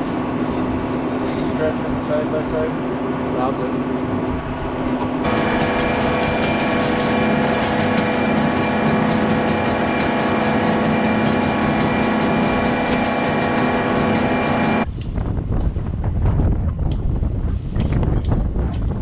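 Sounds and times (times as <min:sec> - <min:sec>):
utility vehicle engine running: 0:04.8 - 0:14.9.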